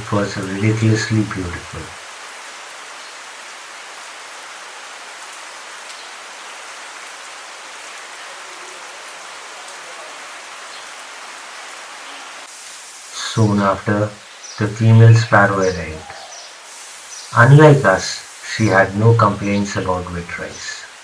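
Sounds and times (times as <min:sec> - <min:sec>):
rain hissing: 0:00.0 - 0:21.0
raindrop ticks: 0:05.2 - 0:06.1.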